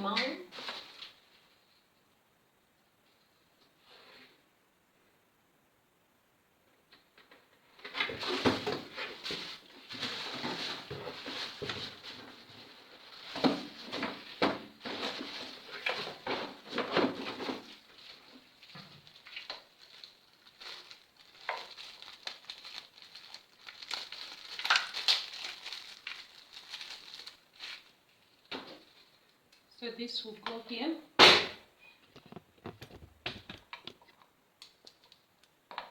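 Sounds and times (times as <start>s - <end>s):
plastic parts clicking and knocking: 32.1s - 35.9s.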